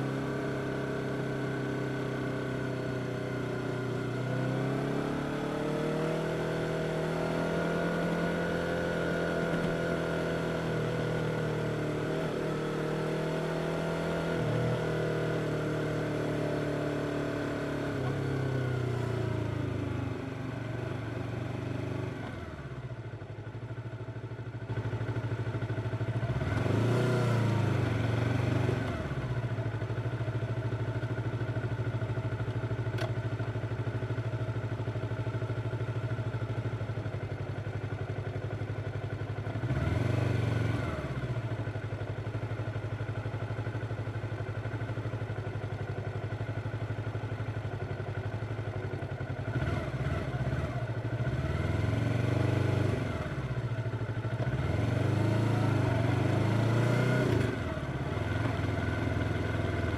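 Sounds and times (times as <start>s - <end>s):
motorcycle engine revving: 0.0s - 19.9s, 24.7s - 30.2s, 39.0s - 45.0s, 48.4s - 59.9s.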